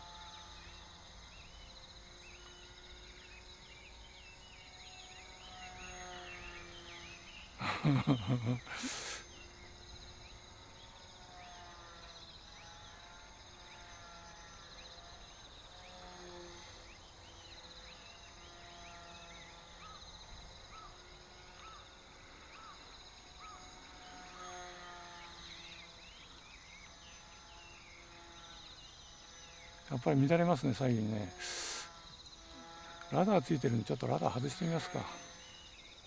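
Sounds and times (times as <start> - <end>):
birds chirping: 0.0 - 12.9, 15.9 - 36.0
faint low hum: 0.0 - 36.0
insects trilling: 0.0 - 36.0
short repeated bird calls: 7.6 - 9.6, 30.0 - 32.0.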